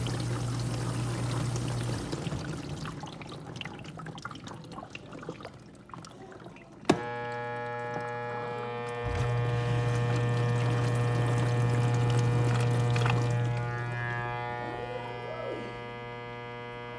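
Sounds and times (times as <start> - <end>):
water swishing in dishwasher: 0.0 - 14.2
steady electric buzz: 7.0 - 16.9.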